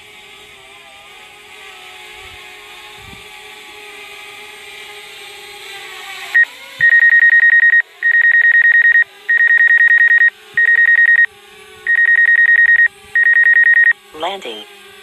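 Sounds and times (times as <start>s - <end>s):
electronic warning beeper: 6.4s - 11.3s, 11.9s - 14.6s.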